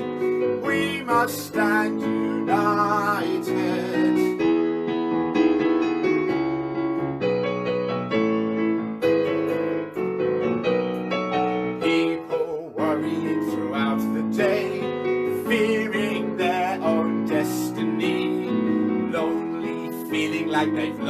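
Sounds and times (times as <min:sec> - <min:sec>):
person singing with vibrato: 0:00.0 - 0:04.6, 0:11.8 - 0:21.0
piano chords: 0:00.0 - 0:21.0.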